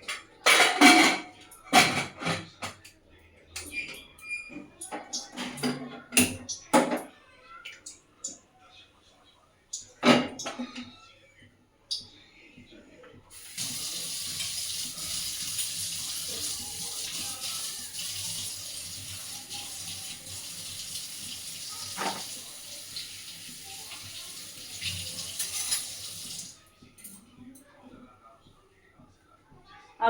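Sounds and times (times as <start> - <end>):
tap running into a sink: 13.4 - 26.5.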